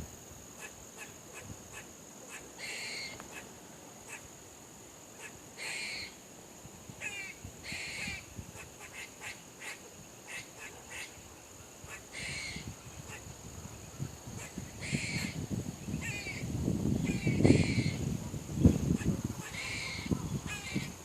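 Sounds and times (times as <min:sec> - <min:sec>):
squirrel chucking calls: 0:00.6 - 0:03.5, 0:05.2 - 0:06.2, 0:07.0 - 0:11.2, 0:11.8 - 0:13.3, 0:14.4 - 0:18.0, 0:18.9 - 0:21.0
squirrels barking: 0:00.6 - 0:04.3, 0:05.2 - 0:06.2, 0:07.0 - 0:11.2, 0:11.8 - 0:13.3, 0:14.4 - 0:15.4, 0:16.0 - 0:18.0, 0:18.9 - 0:21.0.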